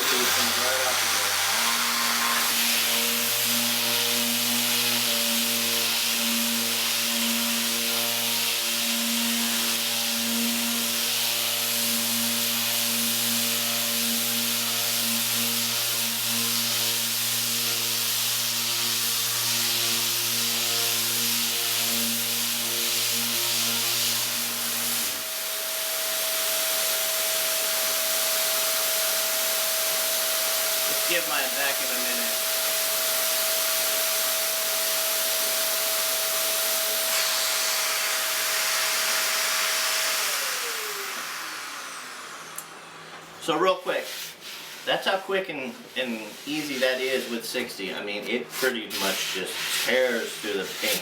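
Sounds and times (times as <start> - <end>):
abrasive sanding hiss: 0.0 - 3.5, 29.9 - 34.0, 43.4 - 51.0
electric sander motor hum: 0.0 - 31.1, 33.8 - 43.2.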